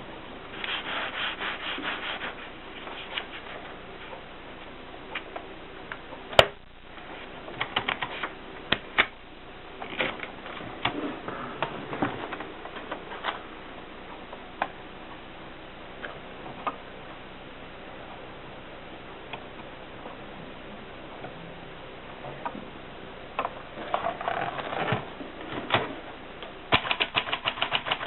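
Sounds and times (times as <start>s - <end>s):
typewriter keys clacking: 26.7s - 28.0s.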